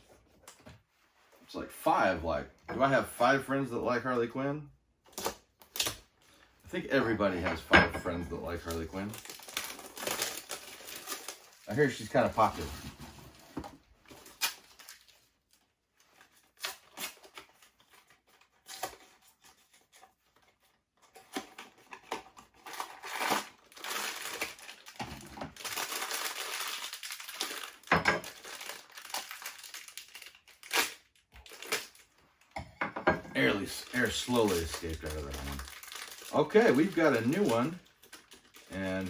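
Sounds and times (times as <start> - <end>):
sharp cracks of packaging: 5.1 - 6.2, 8.6 - 12.6, 14.0 - 32.2, 33.7 - 39.0
foil bag crinkling: 8.4 - 32.2, 33.4 - 39.0.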